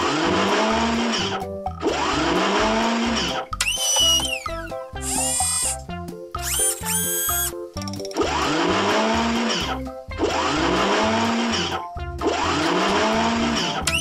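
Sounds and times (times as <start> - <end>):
whirring motor rising and falling: 0.0 - 5.8, 6.4 - 7.5, 8.2 - 14.0
background music: 0.0 - 14.0.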